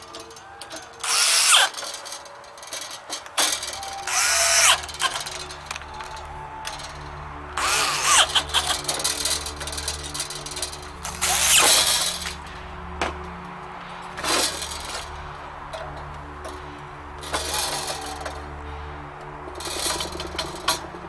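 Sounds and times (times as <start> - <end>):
screws grinding into sheet metal: 0.0 - 5.5.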